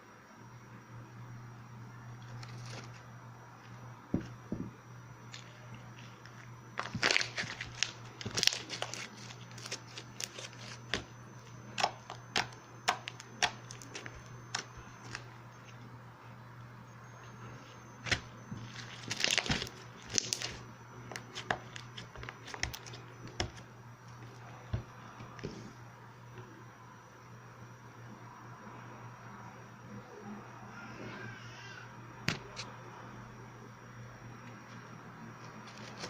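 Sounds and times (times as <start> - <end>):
faint low hum: 0.0 - 36.0
slime crackling and popping: 6.8 - 11.1, 18.0 - 23.5.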